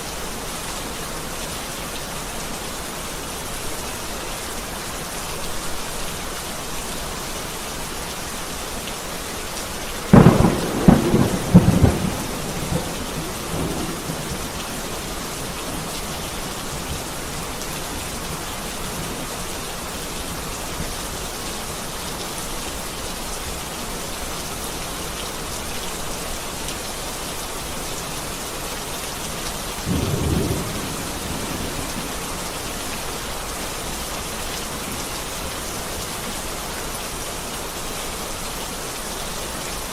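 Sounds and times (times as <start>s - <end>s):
heavy rain falling: 0.0s - 39.9s
thunder cracking and rumbling: 10.1s - 17.5s, 29.9s - 32.7s.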